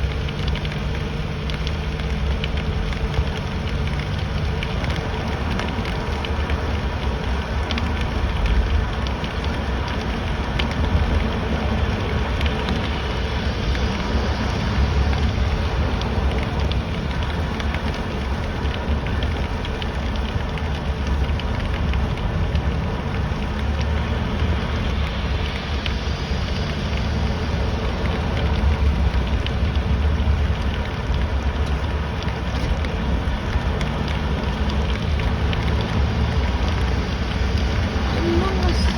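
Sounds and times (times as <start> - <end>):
low road rumble: 0.0 - 38.9
rain on a car: 0.0 - 38.9
raindrops ticking: 0.0 - 38.9.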